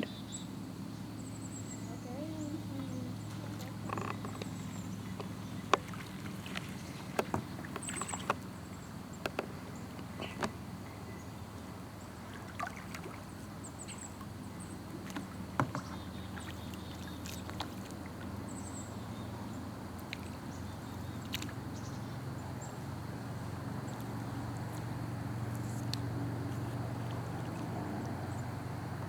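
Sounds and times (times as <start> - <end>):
paddle strokes through water: 1.5 - 29.0
short light knocks: 3.6 - 8.4, 9.2 - 10.6.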